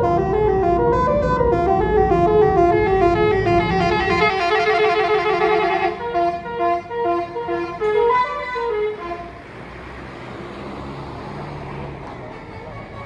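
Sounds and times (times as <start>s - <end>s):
bus horn playing fast melody: 0.0s - 9.4s, 12.4s - 13.0s
road noise: 0.0s - 13.0s.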